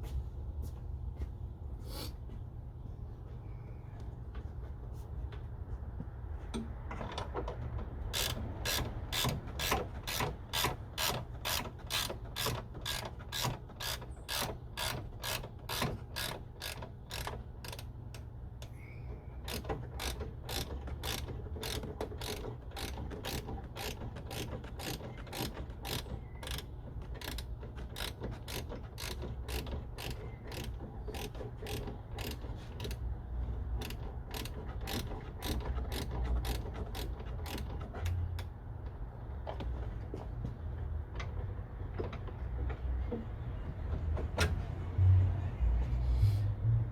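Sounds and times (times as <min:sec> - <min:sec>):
ratchet wrench clicking: 0:08.1 - 0:17.9, 0:19.5 - 0:33.0, 0:33.8 - 0:37.7.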